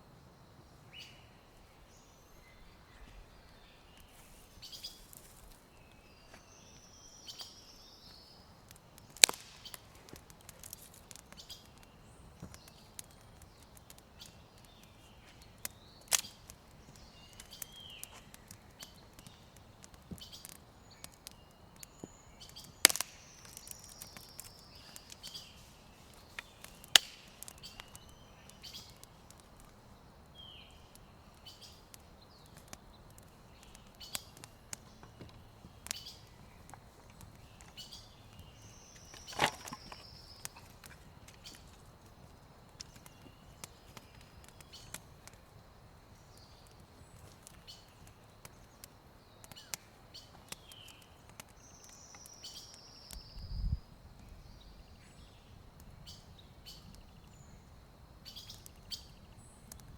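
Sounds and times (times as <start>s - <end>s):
small birds chirping: 0.0s - 59.9s
loud sharp cracks: 8.7s - 11.8s, 16.1s - 16.6s, 22.5s - 25.2s, 26.6s - 28.0s.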